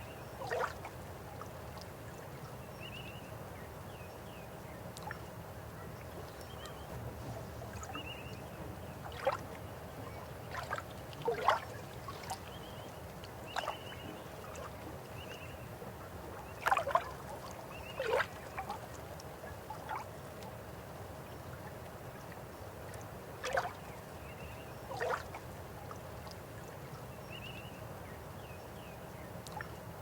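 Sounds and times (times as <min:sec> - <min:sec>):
water gurgles and splashes: 0:00.4 - 0:01.0, 0:07.0 - 0:15.2, 0:16.3 - 0:20.3, 0:23.4 - 0:23.8, 0:24.9 - 0:26.0.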